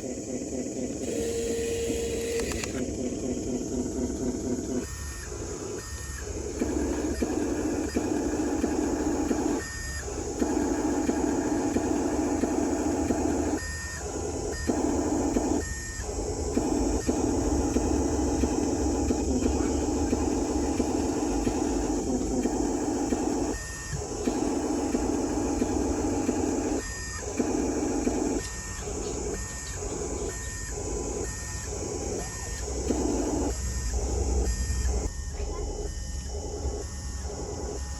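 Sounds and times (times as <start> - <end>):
toy electric motors whirring: 0.0 - 35.1
sharp clicks: 2.1 - 2.9.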